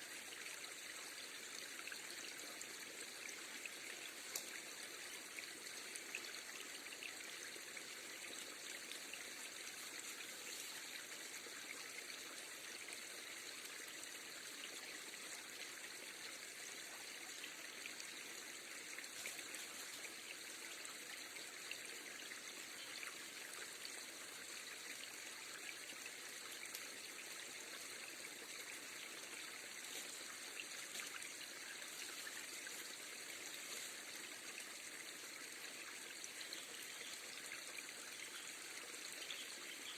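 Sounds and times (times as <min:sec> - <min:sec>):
faint ticks: 0:04.2 - 0:04.6.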